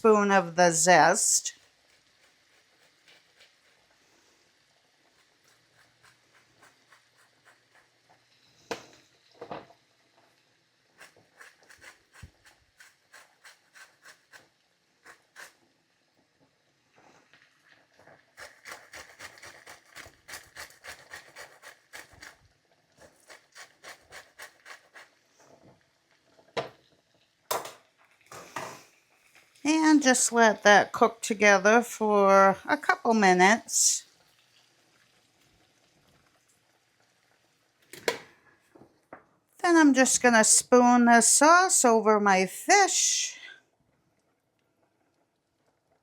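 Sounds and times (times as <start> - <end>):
lemon rasping on a grater: 1.4 - 4.0, 5.1 - 8.0, 10.9 - 15.6, 18.3 - 22.4, 23.0 - 25.2.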